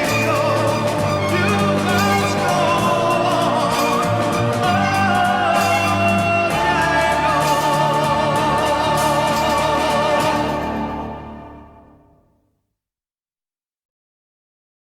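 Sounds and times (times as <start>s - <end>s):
orchestral music: 0.0s - 12.2s.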